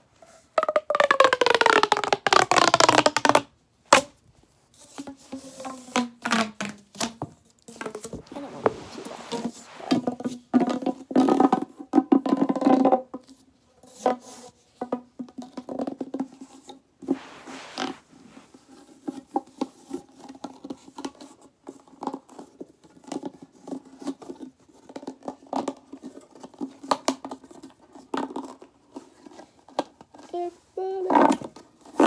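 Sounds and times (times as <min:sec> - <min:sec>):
plastic pop tubes crackling: 0:00.6 - 0:03.4.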